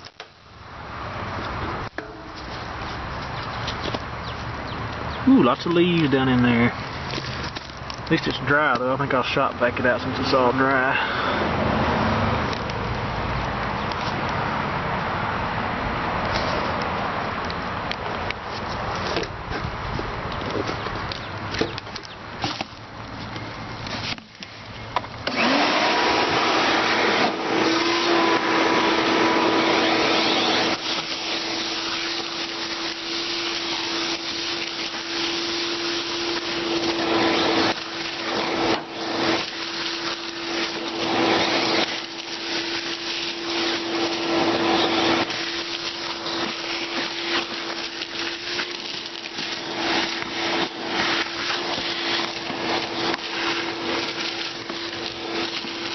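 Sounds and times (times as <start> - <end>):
vacuum sucking dry leaves: 1.2 - 14.4, 21.6 - 55.9
shop vac motor whining: 25.2 - 55.9.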